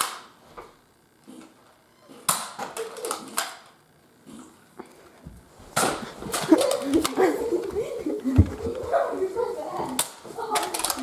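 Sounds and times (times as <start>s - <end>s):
quiet knocks: 7.6s - 9.0s.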